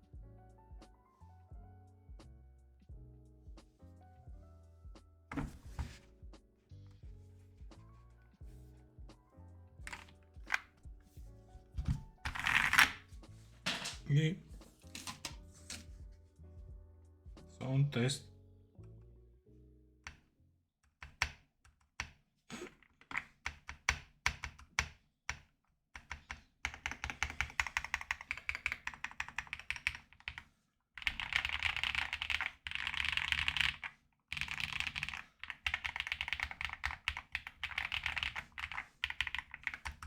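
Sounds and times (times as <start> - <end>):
mechanical keyboard typing: 9.9 - 10.7, 11.8 - 13.0, 23.1 - 25.4, 26.0 - 30.4, 31.0 - 40.0.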